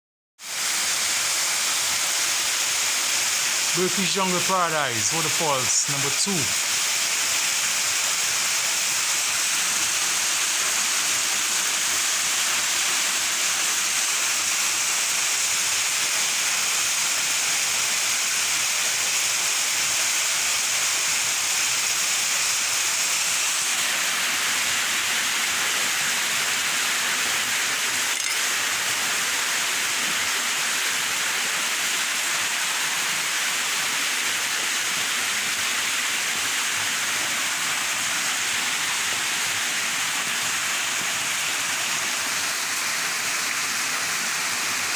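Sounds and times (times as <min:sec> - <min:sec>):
waterfall rushing: 0:00.4 - 0:44.9.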